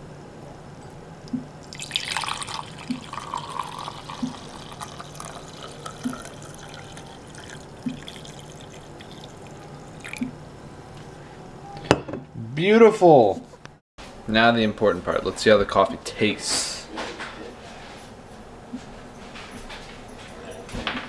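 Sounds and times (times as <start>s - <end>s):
coffee pouring into a mug: 1.6s - 10.2s.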